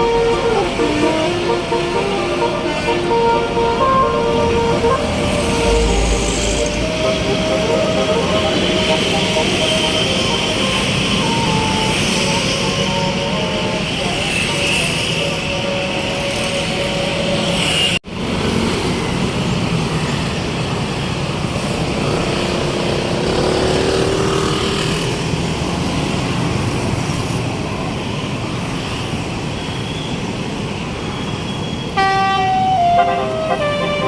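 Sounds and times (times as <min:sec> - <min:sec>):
musical bus horn: 0:00.0 - 0:18.0, 0:32.0 - 0:34.0
bus engine: 0:00.0 - 0:29.6, 0:32.0 - 0:34.0
road traffic: 0:00.0 - 0:34.0.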